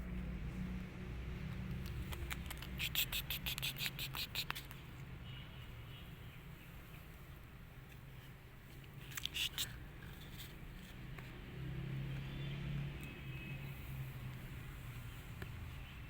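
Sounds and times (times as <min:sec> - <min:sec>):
kittens suckling wet clicks: 0:01.7 - 0:04.9, 0:08.8 - 0:09.8.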